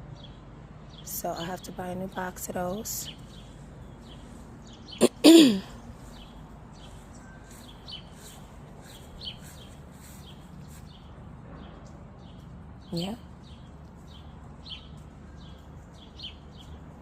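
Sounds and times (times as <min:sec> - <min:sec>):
small birds chirping: 0:00.1 - 0:17.0
person's loud vocal sound: 0:05.0 - 0:05.7.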